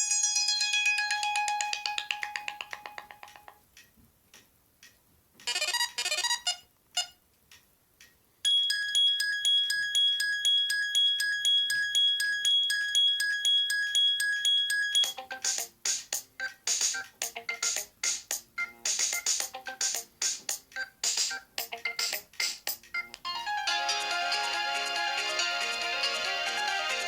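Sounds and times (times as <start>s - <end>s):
phone ringtone tune: 0.0s - 3.5s, 8.5s - 15.8s, 16.4s - 20.1s, 20.8s - 27.0s.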